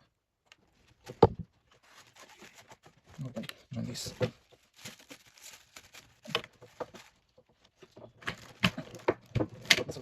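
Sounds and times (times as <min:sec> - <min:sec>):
plastic parts clicking and knocking: 0:06.2 - 0:10.0.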